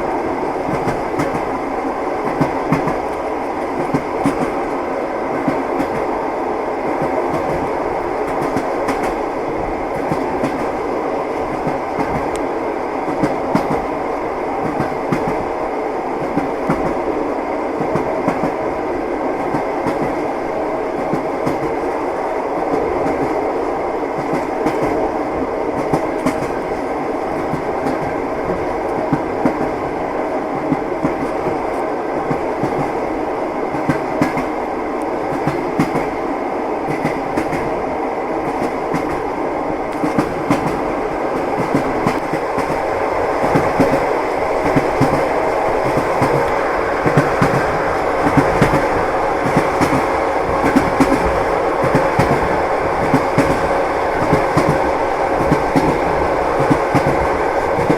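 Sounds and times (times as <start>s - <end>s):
train wheels clacking over rail joints: 39.9s - 57.9s.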